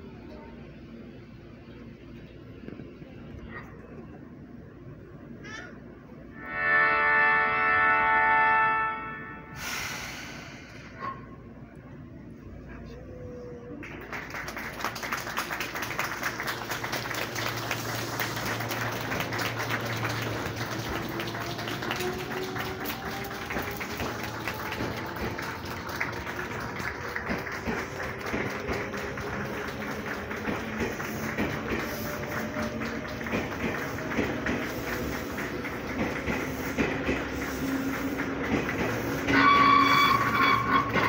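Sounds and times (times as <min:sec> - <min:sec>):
crowd clapping: 0:13.7 - 0:41.0
electric train motors gliding tones: 0:36.6 - 0:41.0.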